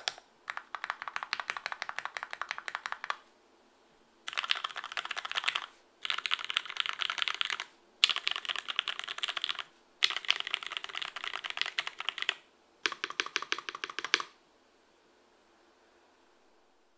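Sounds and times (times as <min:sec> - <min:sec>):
mechanical keyboard typing: 0:00.0 - 0:03.2, 0:04.3 - 0:14.4.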